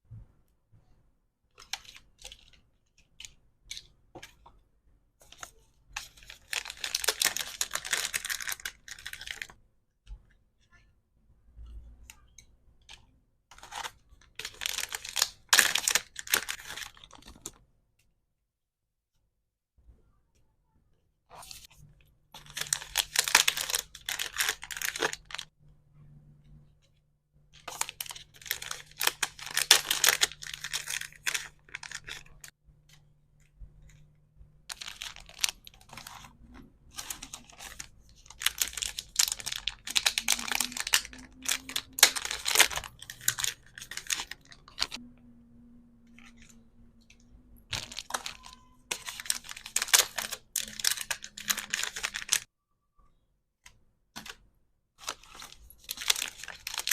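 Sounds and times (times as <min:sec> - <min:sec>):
packaging crinkling and tearing: 0:06.0 - 0:09.5, 0:13.6 - 0:17.5, 0:22.4 - 0:25.5, 0:27.6 - 0:32.5, 0:34.7 - 0:45.0, 0:47.7 - 0:52.5, 0:55.0 - 0:56.9.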